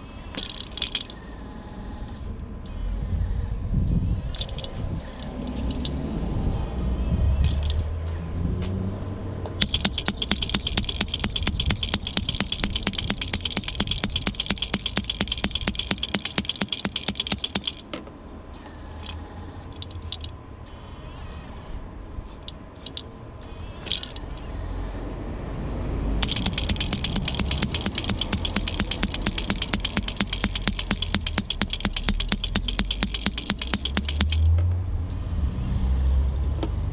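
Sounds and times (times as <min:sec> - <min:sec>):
electric hammer chattering on concrete: 0:00.0 - 0:06.0, 0:06.6 - 0:07.9, 0:09.6 - 0:25.2, 0:26.2 - 0:36.2.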